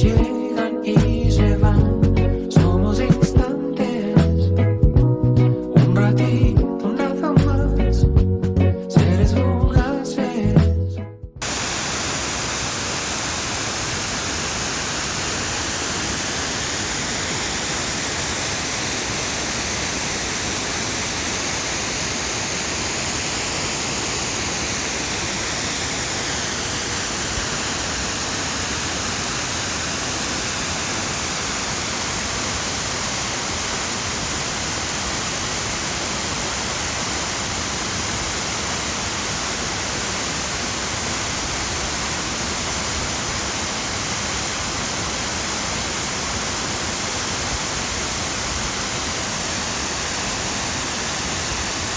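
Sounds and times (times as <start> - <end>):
waterfall hissing: 11.4 - 51.9.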